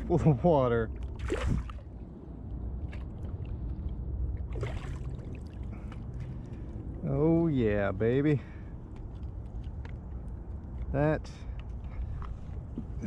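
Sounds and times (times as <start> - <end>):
low rumble of moving water: 0.0 - 11.2
fish splashing in water: 1.0 - 1.9, 4.4 - 6.4.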